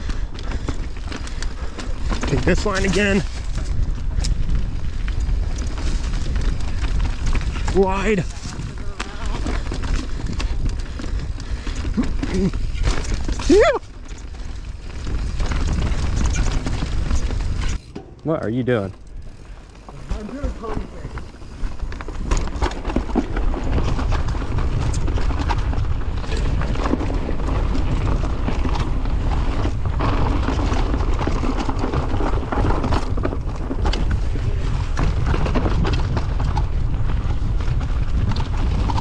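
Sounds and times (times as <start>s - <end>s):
mountain bike rattling: 0.0s - 39.0s
wind buffeting microphone: 1.3s - 13.8s.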